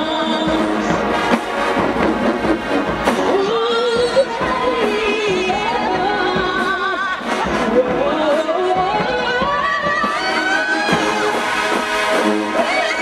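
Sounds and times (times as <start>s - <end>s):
marching band brass melody: 0.0s - 13.0s
drum hits: 0.4s - 10.3s.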